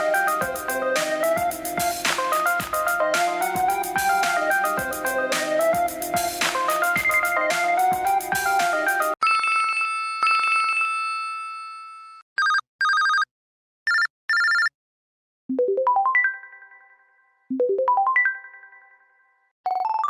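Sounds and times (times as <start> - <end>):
rising electronic arpeggio: 0.0 - 9.2
melodic phone ringtone: 0.0 - 13.3.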